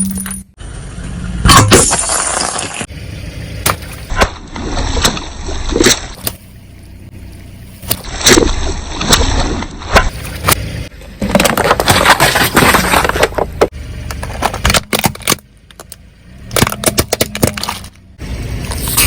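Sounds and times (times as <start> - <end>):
bottles and cans crushed by tyres: 1.4 - 2.9, 7.9 - 19.0.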